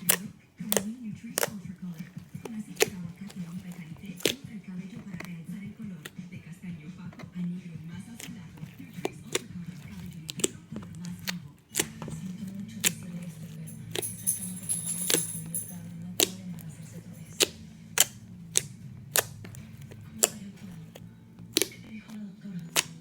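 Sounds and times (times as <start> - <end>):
background music: 0.0 - 23.0
slime popping and clicking: 2.4 - 4.4, 17.4 - 21.9, 22.6 - 23.0.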